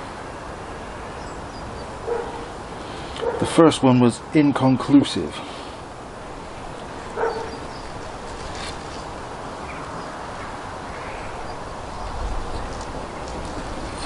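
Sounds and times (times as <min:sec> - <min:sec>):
outdoor background noise: 0:00.0 - 0:14.0
dog barking: 0:02.0 - 0:02.5, 0:03.2 - 0:03.5, 0:07.2 - 0:07.6.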